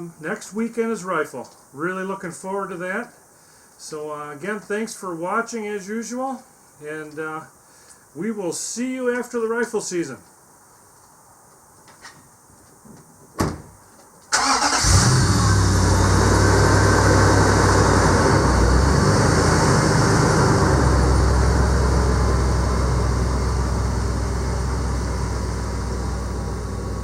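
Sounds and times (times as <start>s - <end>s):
vehicle engine starting and idling: 14.3s - 27.0s.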